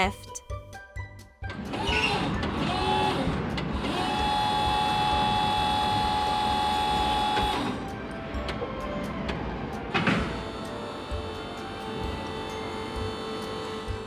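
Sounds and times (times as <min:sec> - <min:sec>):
small electric motor whining: 0:02.1 - 0:07.8.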